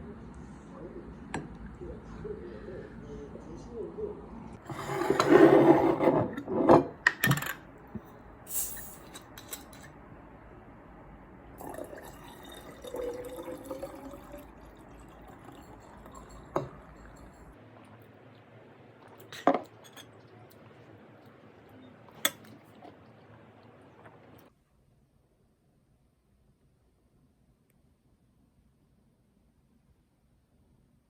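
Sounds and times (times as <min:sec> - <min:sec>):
glass and dishes clinking: 0:11.6 - 0:17.6, 0:19.2 - 0:20.2, 0:22.1 - 0:22.6
liquid filling a glass: 0:11.6 - 0:24.5.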